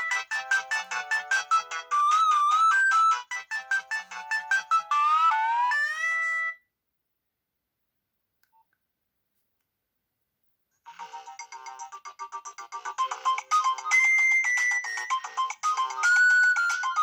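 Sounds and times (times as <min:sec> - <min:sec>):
polyphonic phone ringtone: 0:00.0 - 0:06.5, 0:10.9 - 0:17.0.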